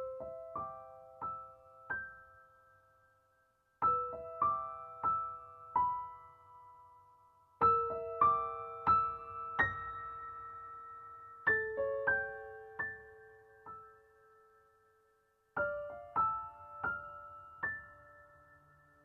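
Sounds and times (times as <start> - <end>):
soft piano music: 0.0 - 19.0.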